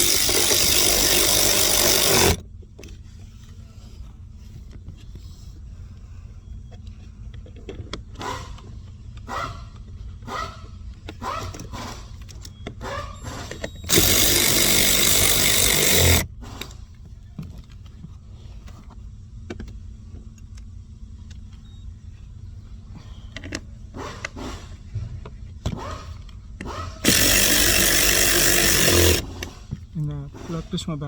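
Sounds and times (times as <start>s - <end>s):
power drill spinning: 0.0s - 2.4s, 12.9s - 16.3s, 26.7s - 29.7s.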